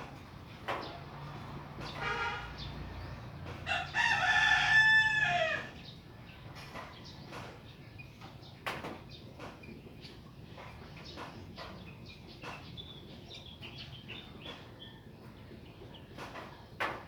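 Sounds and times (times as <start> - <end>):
rooster crowing: 3.6 - 5.8.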